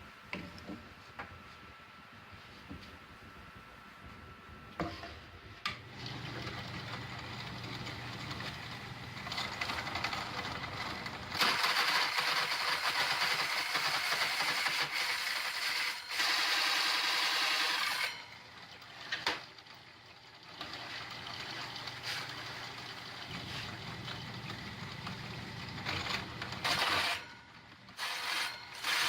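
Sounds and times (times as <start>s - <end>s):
saw cutting plywood: 11.4s - 18.3s, 26.6s - 27.3s, 28.0s - 29.0s.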